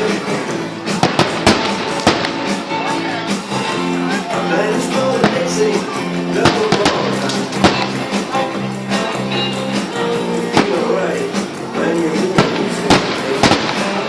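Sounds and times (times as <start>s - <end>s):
guitar rock music: 0.0s - 14.0s
firework bangs: 0.2s - 3.5s, 4.9s - 8.4s, 10.5s - 11.4s, 12.2s - 14.0s.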